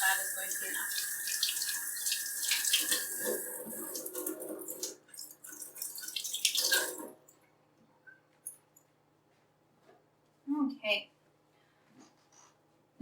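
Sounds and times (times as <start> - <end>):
tap running into sink: 0.0 - 5.0, 5.8 - 7.2.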